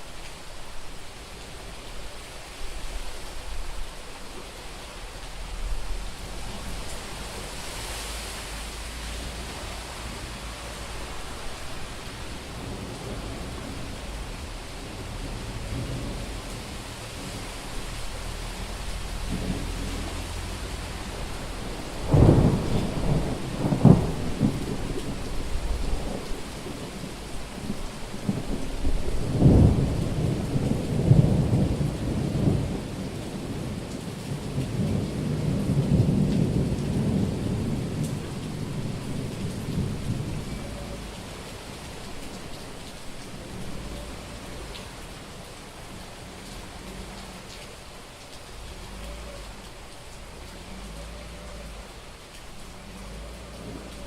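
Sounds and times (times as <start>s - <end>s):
heavy rain: 0.0s - 54.0s
thunder cracks and rumble: 10.8s - 42.4s.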